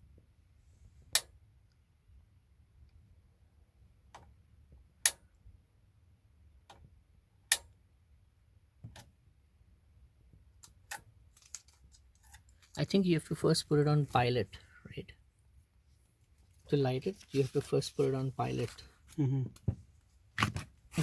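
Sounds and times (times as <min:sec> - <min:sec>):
piezo igniter clicking: 0:05.0 - 0:05.3, 0:07.5 - 0:07.8.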